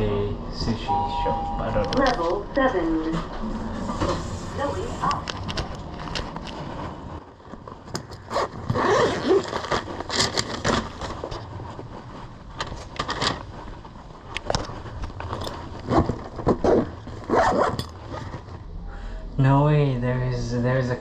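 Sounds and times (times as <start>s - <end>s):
clothing and gear rustling: 3.6s - 18.7s.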